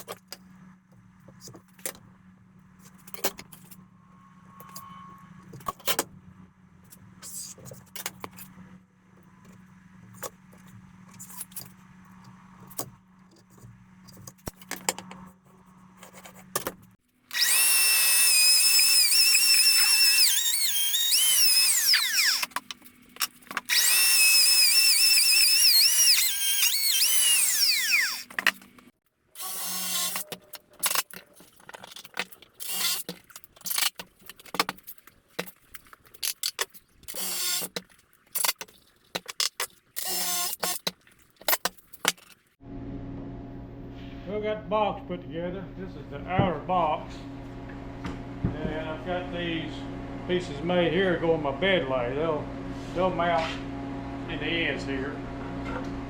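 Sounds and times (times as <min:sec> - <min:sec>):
power tool motor cutting wood: 0:17.3 - 0:22.7, 0:23.6 - 0:31.0, 0:32.6 - 0:34.0, 0:37.1 - 0:37.8, 0:40.0 - 0:40.9.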